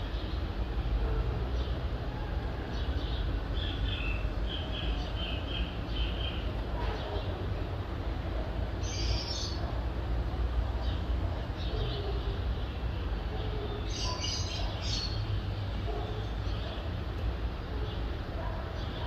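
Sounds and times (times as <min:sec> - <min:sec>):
low rumble of city traffic: 0:00.0 - 0:19.0
birds chirping: 0:08.8 - 0:09.7, 0:10.8 - 0:16.9.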